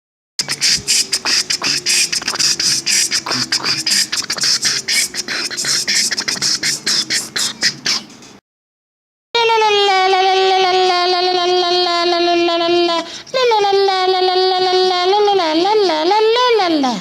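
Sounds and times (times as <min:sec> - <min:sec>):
beatbox percussion loop: 0:00.4 - 0:08.4.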